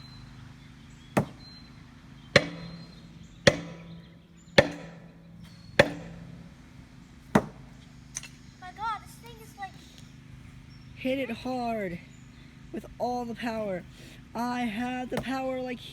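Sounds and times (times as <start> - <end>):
heavy blows on steel shell: 2.3 - 6.5.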